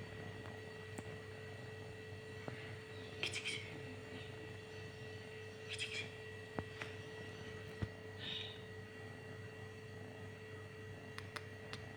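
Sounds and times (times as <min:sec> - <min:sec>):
steady hum: 0:00.0 - 0:11.9.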